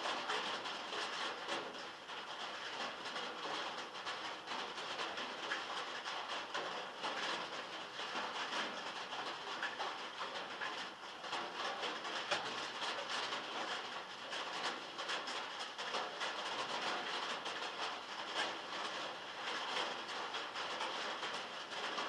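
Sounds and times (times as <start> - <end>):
heavy rain on a metal roof: 0.0 - 22.0.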